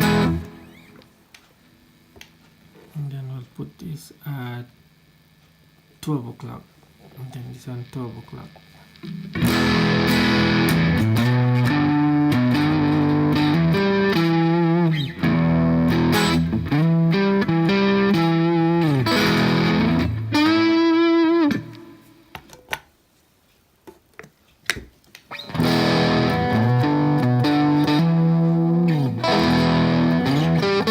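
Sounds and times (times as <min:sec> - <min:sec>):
overdriven electric guitar: 0:00.0 - 0:01.1, 0:08.5 - 0:22.3, 0:25.3 - 0:30.9.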